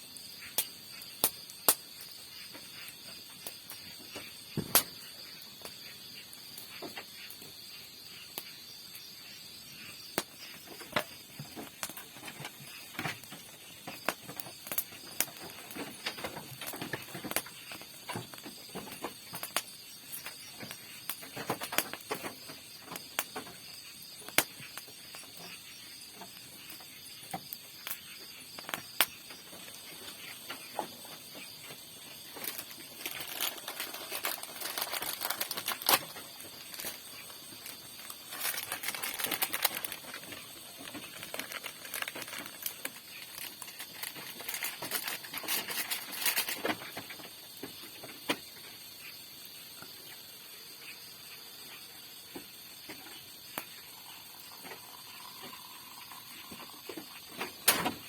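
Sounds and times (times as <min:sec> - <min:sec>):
insects chirring: 0:00.0 - 0:58.0
handling clicks and rustles: 0:29.5 - 0:47.3.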